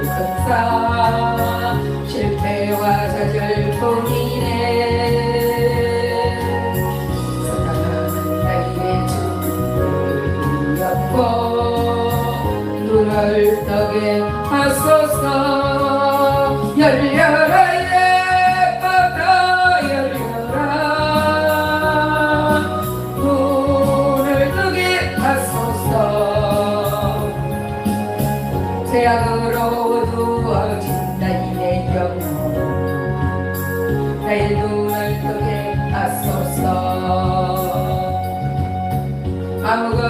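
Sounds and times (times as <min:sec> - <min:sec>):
instrumental accompaniment: 0:00.0 - 0:40.0
person singing gospel song: 0:07.5 - 0:27.8.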